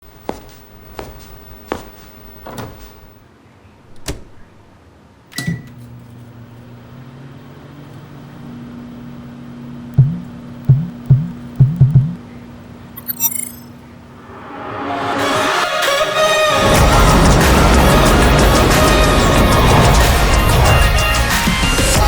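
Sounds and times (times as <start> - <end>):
short high beep: 13.0 - 13.6.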